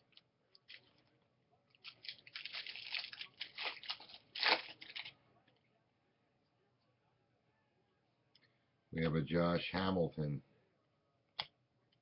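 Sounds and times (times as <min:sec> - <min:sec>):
foil wrapper tearing and crinkling: 0:01.8 - 0:05.2.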